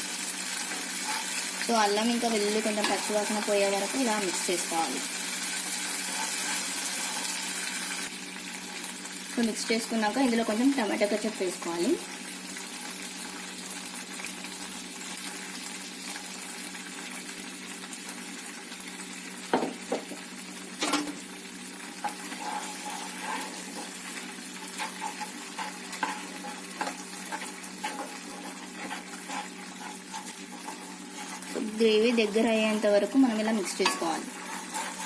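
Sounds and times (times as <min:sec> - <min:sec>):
sauce sizzling in hot oil: 0:00.0 - 0:35.0
spoon stirring: 0:00.6 - 0:03.4, 0:22.0 - 0:32.4, 0:33.3 - 0:35.0
spoon knocking on pan: 0:19.5 - 0:20.2.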